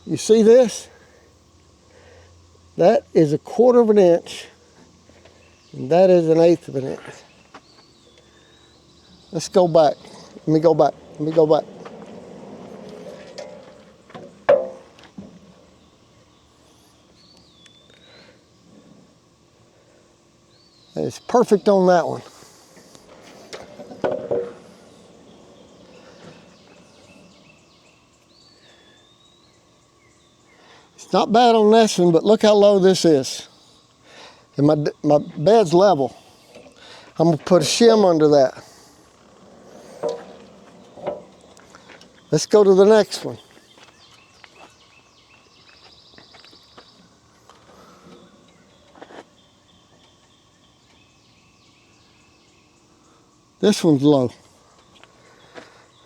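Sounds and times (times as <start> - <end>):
birds chirping and trilling: 0.1 - 56.0
faint knocks: 10.0 - 15.7.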